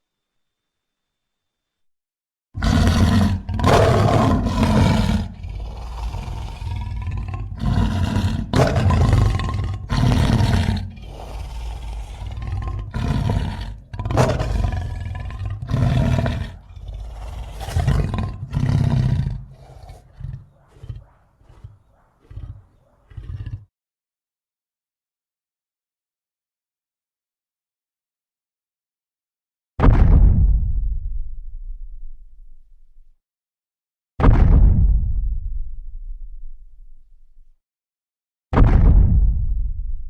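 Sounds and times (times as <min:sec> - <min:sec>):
loud monster roars: 0:02.6 - 0:23.6
soft monster grunts: 0:02.6 - 0:23.6.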